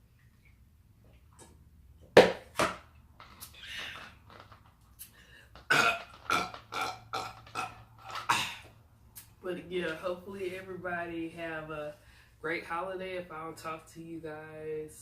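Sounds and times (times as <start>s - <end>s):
loud burps: 5.7s - 8.7s.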